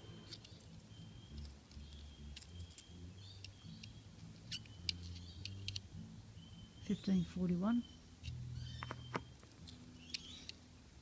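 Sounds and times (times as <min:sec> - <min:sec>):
small clicks and taps on padlock: 0:01.3 - 0:05.9, 0:08.2 - 0:10.6.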